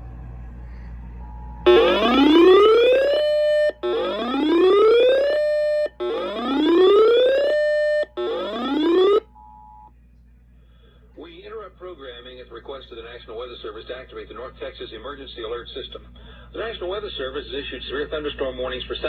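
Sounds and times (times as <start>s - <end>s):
buzzy electronic rising whoop: 1.7s - 9.2s.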